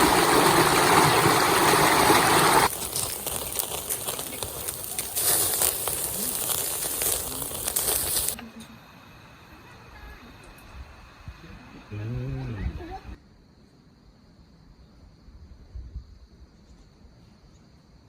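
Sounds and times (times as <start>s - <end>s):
mountain stream rushing: 0.0s - 8.4s
small clicks and crackles: 2.6s - 8.4s.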